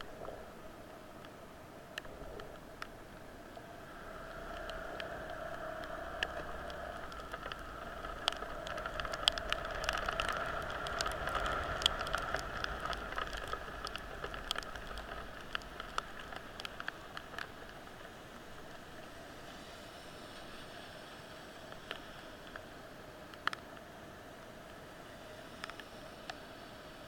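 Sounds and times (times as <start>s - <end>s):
raindrop ticks: 1.2s - 20.6s, 21.3s - 22.7s, 23.3s - 23.8s, 25.5s - 26.4s
heavy rain: 2.5s - 19.8s
traffic on wet road: 3.9s - 19.8s.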